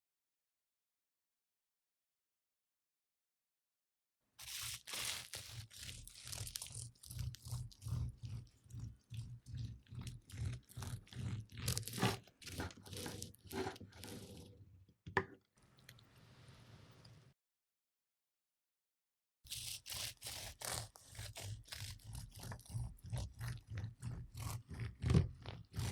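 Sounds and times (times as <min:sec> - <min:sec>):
pastry crust crunching: 0:04.4 - 0:14.2.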